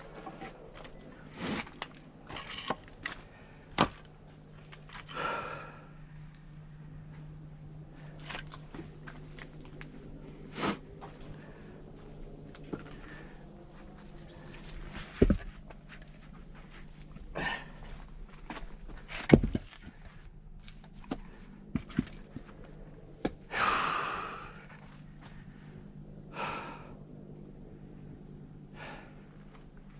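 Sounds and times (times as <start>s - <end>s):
person breathing hard: 5.0s - 6.1s, 12.7s - 13.6s, 17.3s - 18.0s, 23.4s - 27.0s, 28.7s - 29.4s.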